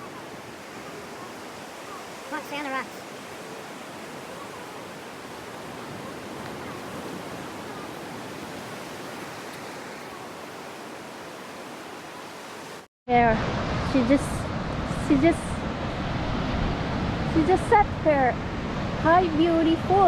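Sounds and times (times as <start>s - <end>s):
ocean surf washing onto beach: 0.0s - 20.0s.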